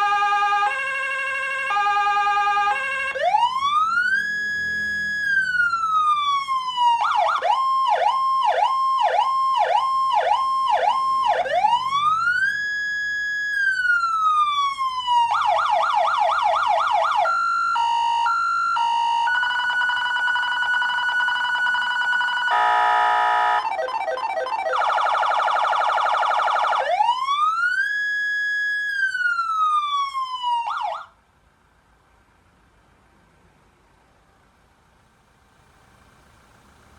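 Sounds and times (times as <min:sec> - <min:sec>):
electronic siren: 0:00.0 - 0:27.9.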